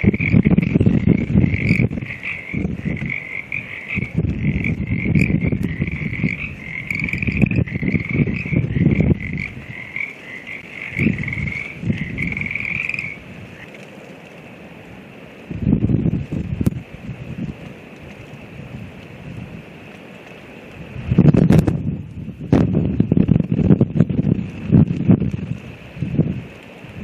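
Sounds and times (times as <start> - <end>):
frogs trilling chorus: 0.0 - 13.8
wind buffeting microphone: 0.0 - 27.0.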